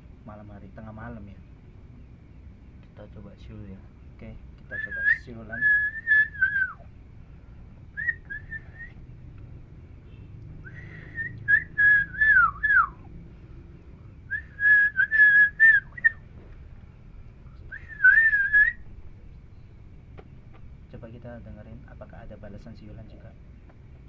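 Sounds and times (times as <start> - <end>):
person whistling: 4.7 - 6.8, 8.0 - 9.0, 10.6 - 13.0, 14.3 - 16.2, 17.7 - 18.8.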